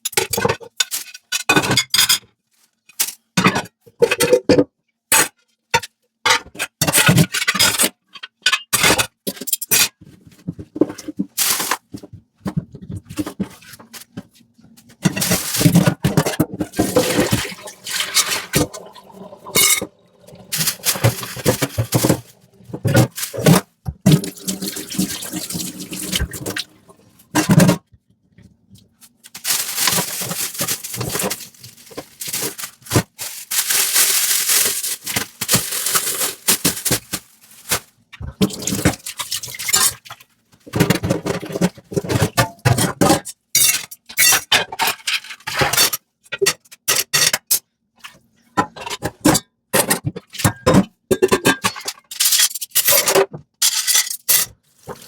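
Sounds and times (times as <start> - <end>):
dishes knocking and rubbing: 15.1 - 27.8
tap water running: 16.7 - 23.4, 24.0 - 27.3.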